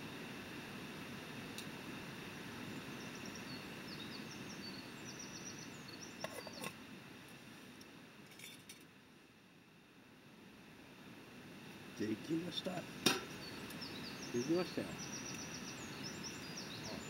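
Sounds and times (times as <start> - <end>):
low background noise: 0.0 - 17.0
small birds chirping: 2.4 - 6.8, 11.8 - 17.0.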